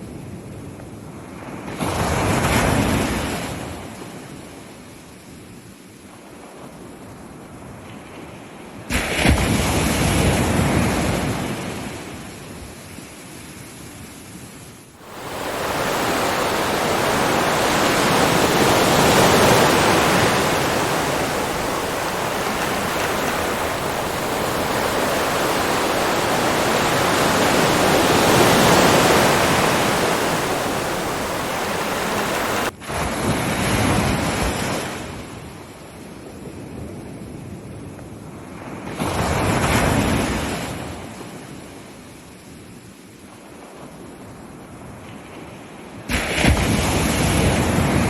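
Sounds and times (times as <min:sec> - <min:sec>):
ocean waves breaking: 0:15.0 - 0:35.2.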